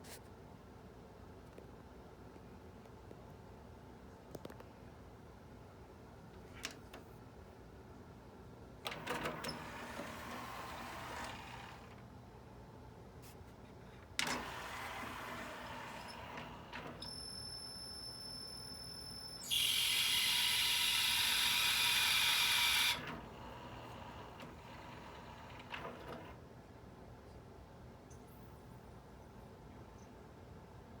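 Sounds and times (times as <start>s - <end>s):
high-pitched mechanical whine: 14.7s - 25.7s.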